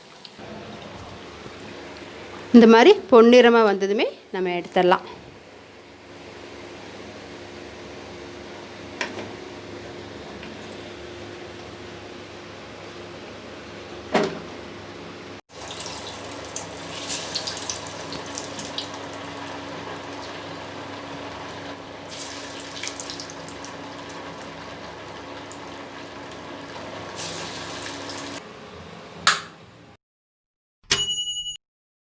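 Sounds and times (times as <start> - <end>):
food deep-frying in oil: 15.5 - 28.4.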